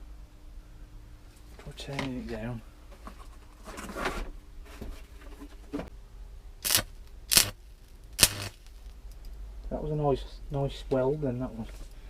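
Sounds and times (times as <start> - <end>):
low steady hum: 0.0 - 12.0
arc welder crackling: 6.6 - 9.4.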